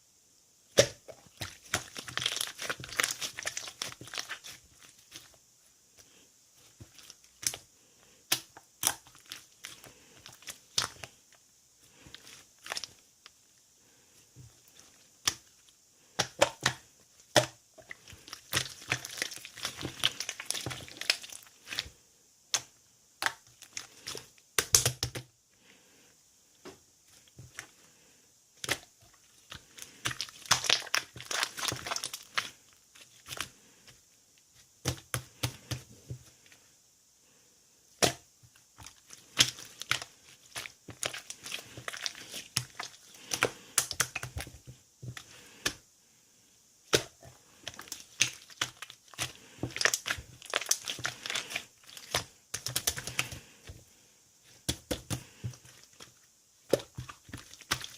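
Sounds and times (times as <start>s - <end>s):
slime crackling and popping: 0.7s - 5.4s, 8.3s - 11.2s, 16.2s - 21.9s, 22.5s - 25.2s, 28.6s - 33.5s, 38.0s - 45.8s, 46.9s - 53.5s, 54.5s - 57.9s.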